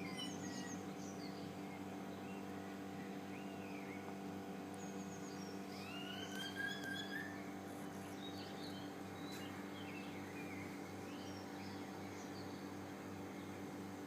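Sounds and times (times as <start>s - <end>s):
steady low hum: 0.0s - 14.0s
bird whistle imitating siren: 5.8s - 7.4s.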